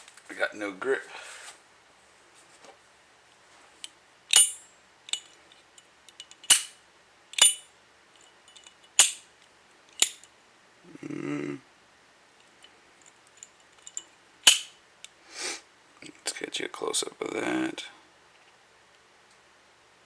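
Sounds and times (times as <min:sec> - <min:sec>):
lighter lid clinking: 0:13.4 - 0:14.8.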